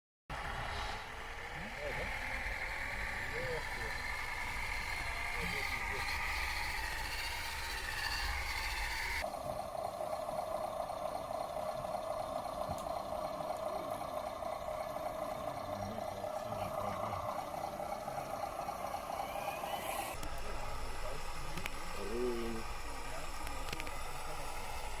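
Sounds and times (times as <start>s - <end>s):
toy truck motor whining: 1.0s - 25.0s.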